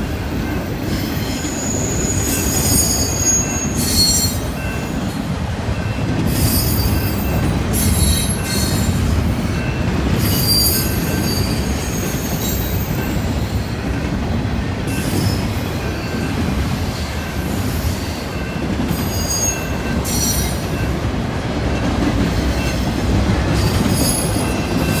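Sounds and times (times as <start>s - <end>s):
train cars rumbling: 0.0s - 25.0s
steel wheel squeal: 0.9s - 9.0s, 10.2s - 13.3s, 18.4s - 20.8s, 23.6s - 25.0s.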